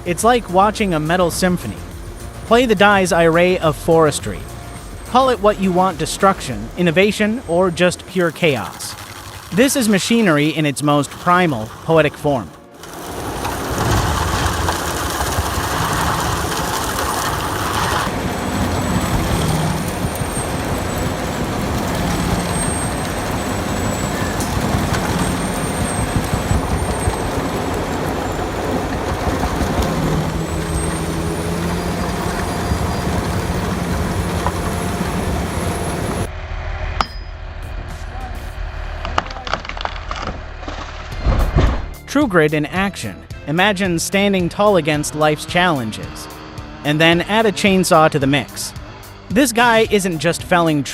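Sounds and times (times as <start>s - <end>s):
heavy machinery running: 0.0s - 42.2s, 43.0s - 50.9s
scattered knocks: 12.5s - 36.3s.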